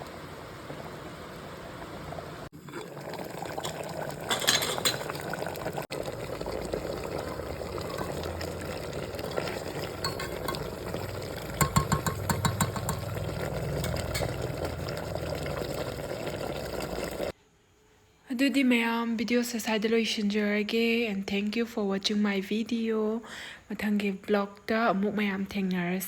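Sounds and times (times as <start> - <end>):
liquid gurgling: 0.0 - 17.3.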